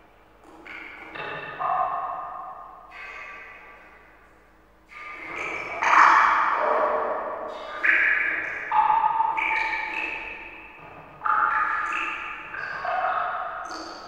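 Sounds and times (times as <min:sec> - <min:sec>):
echoing water drops plinking: 0:00.7 - 0:04.1, 0:04.9 - 0:14.0.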